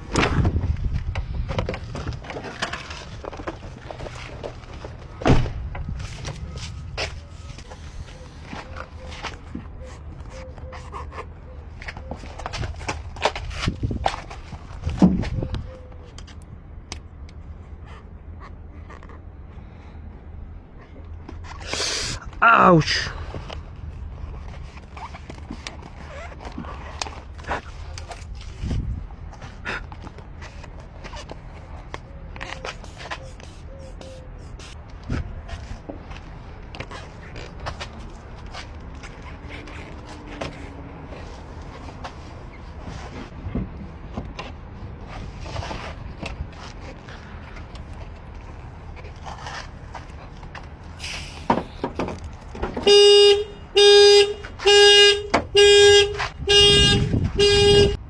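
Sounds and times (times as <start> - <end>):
car alarm horn blasts: 52.8 - 58.0.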